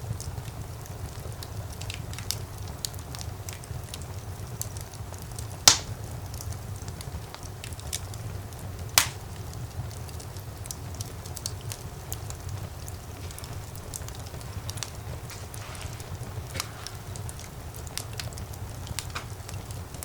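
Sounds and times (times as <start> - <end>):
fire rumbling and crackling: 0.0 - 20.0
loud fire pops: 0.0 - 20.0.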